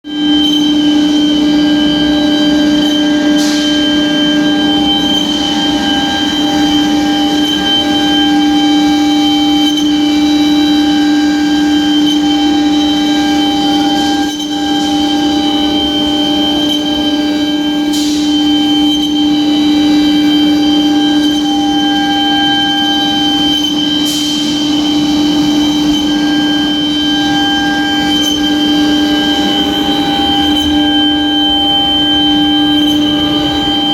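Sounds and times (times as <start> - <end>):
router spindle whine: 0.1 - 33.9.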